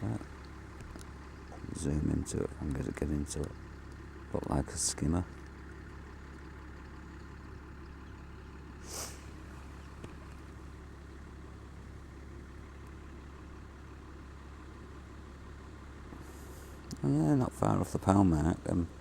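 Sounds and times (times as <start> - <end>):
low background rumble: 0.0 - 19.0
short hiss: 8.8 - 9.4
faint tick: 16.8 - 17.0.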